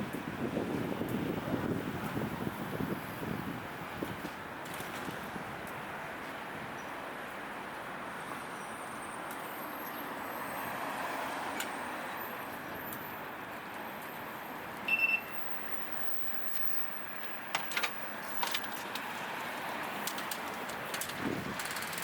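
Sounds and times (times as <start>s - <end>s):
city background noise: 0.0s - 22.0s
high electronic beep: 14.9s - 15.6s.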